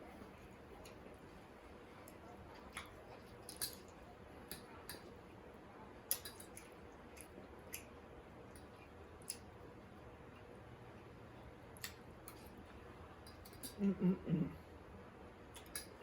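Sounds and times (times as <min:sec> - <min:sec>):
mouth chewing with wet smacks: 0:02.0 - 0:05.1, 0:06.1 - 0:11.1.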